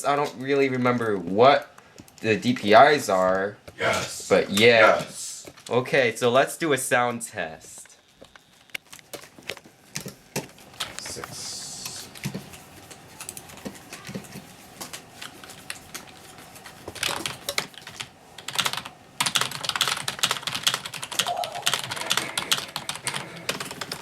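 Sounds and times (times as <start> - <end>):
keyboard typing clatter: 9.9 - 24.0.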